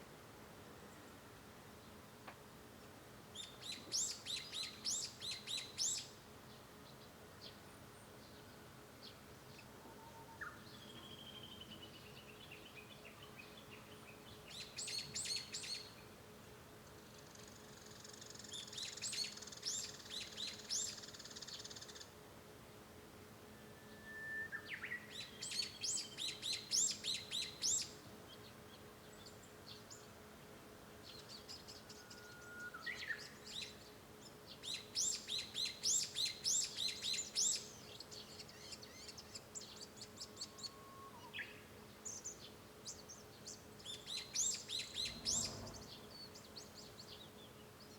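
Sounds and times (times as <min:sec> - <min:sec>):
bird singing: 0:09.9 - 0:16.0, 0:23.5 - 0:30.0, 0:31.0 - 0:47.9.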